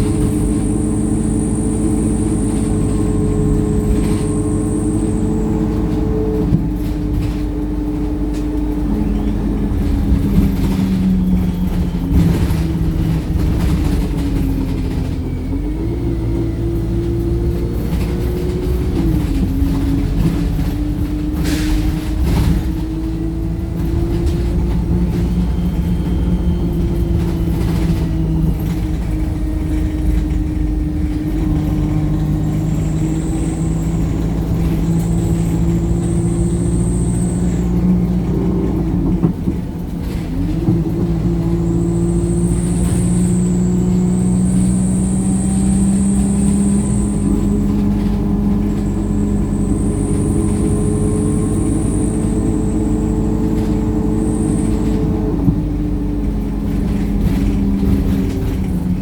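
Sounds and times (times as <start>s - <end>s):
high whine: 0.0s - 6.6s
bus diesel engine running: 0.0s - 59.0s.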